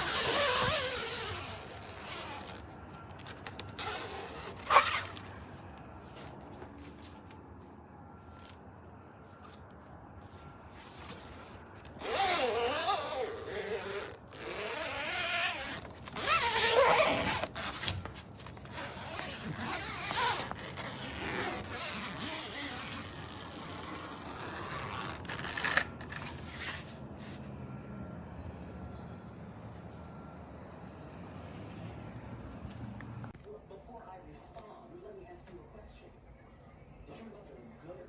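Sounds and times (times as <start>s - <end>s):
zipper rasping along track: 0.0s - 2.6s, 3.2s - 5.3s, 11.8s - 26.8s
mesh rustling: 0.0s - 7.3s.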